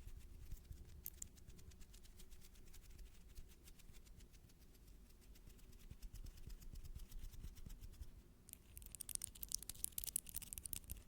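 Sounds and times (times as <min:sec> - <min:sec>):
crisp scratching: 0:00.0 - 0:11.0
small clicks: 0:01.0 - 0:01.4, 0:08.5 - 0:11.0.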